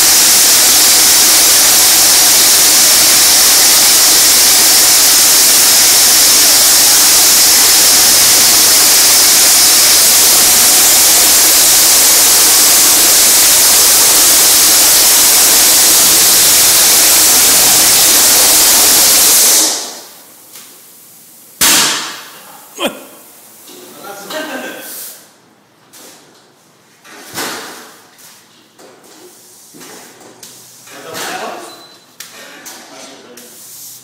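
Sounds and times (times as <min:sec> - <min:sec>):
concrete saw cutting: 0:00.0 - 0:19.9.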